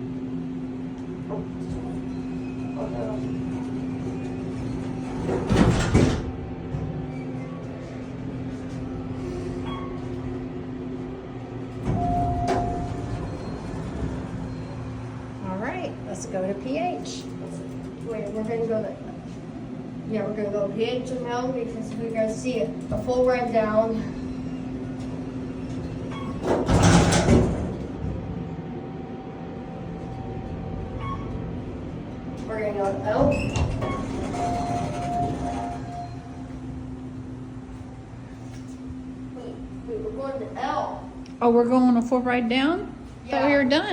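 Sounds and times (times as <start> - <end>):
elevator hum and rumble: 0.0 - 43.9
elevator chime tone: 9.6 - 11.0, 11.7 - 15.6, 29.7 - 31.8, 32.8 - 36.8.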